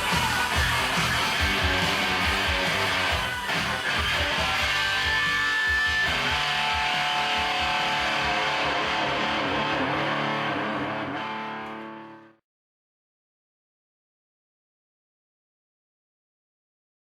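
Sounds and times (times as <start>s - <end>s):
rock music on electric guitar: 0.0s - 12.4s.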